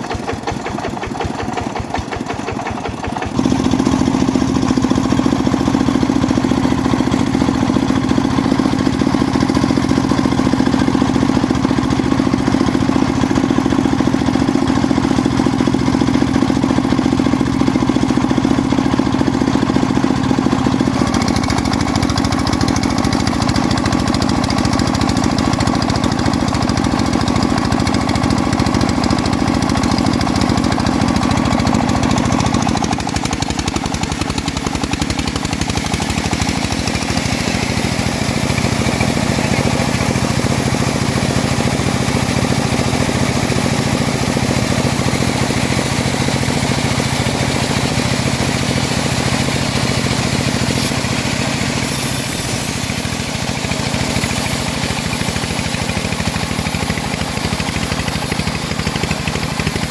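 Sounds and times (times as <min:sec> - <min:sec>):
sawmill engine thrumming: 0:00.0 - 0:59.9
bandsaw blade cutting log: 0:20.1 - 0:59.9.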